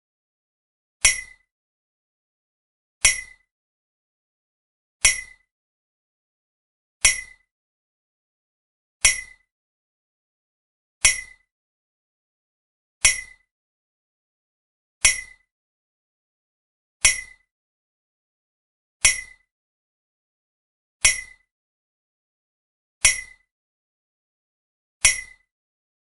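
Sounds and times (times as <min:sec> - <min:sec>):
sharp ringing metal tap: 0:01.0 - 0:01.5, 0:03.0 - 0:03.5, 0:05.0 - 0:05.5, 0:07.0 - 0:07.5, 0:09.0 - 0:09.5, 0:11.0 - 0:11.5, 0:13.0 - 0:13.5, 0:15.0 - 0:15.5, 0:17.0 - 0:17.5, 0:19.0 - 0:19.5, 0:21.0 - 0:21.5, 0:23.0 - 0:23.5, 0:25.0 - 0:25.5.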